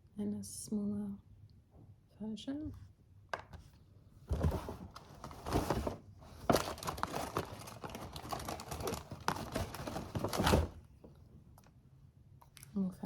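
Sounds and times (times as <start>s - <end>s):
packaging rustling and crinkling: 4.3s - 10.9s.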